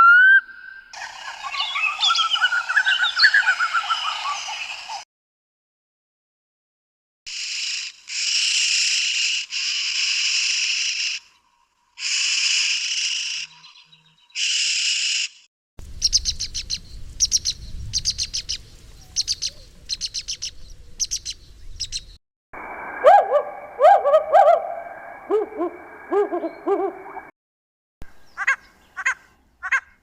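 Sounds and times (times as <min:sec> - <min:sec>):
harsh buzzy bird call: 0:12.0 - 0:15.4.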